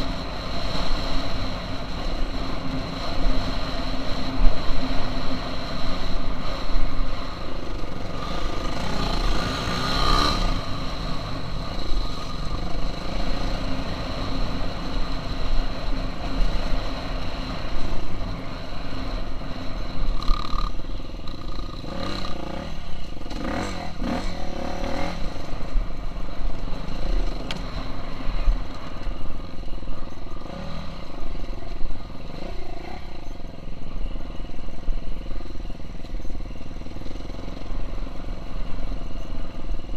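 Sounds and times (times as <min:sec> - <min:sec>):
motocross bike engine revving: 0:08.0 - 0:11.0, 0:21.4 - 0:25.4.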